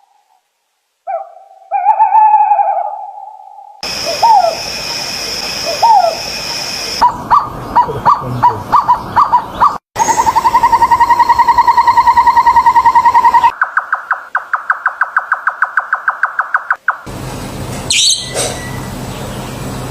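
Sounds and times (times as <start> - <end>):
bird trill: 1.1 - 4.6, 5.3 - 16.7, 17.9 - 19.3
sharp high bird calls: 1.1 - 16.8, 17.9 - 18.9
birds whistling: 3.9 - 13.6, 17.9 - 19.6
bird calling in clipped notes: 17.9 - 18.9.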